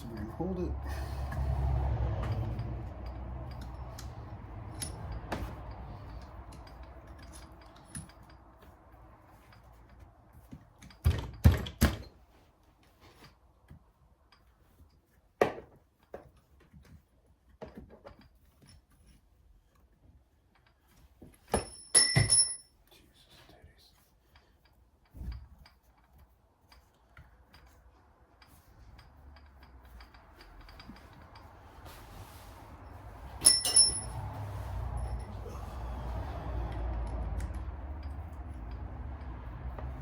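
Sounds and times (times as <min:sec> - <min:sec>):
metal tools clinking: 0:02.2 - 0:08.5, 0:20.7 - 0:22.8, 0:28.4 - 0:32.0, 0:32.9 - 0:34.4
metal parts clanking: 0:33.4 - 0:34.2.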